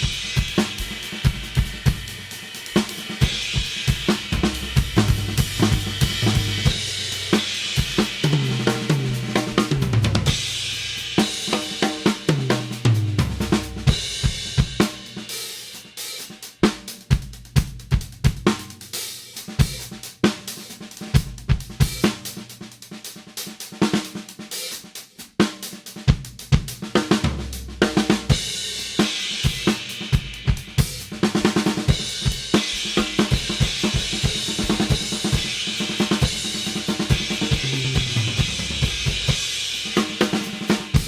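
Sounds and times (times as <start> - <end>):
snare drum: 0.0 - 41.0
bass drum: 3.2 - 11.2, 12.4 - 14.8, 17.1 - 18.8, 26.2 - 40.0.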